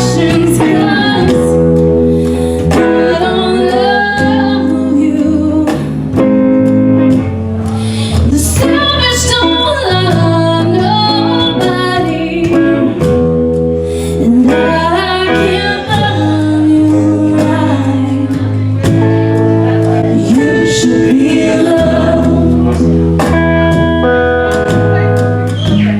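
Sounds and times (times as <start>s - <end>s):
duet singing country song: 0.0s - 25.9s
guitar: 0.0s - 25.9s.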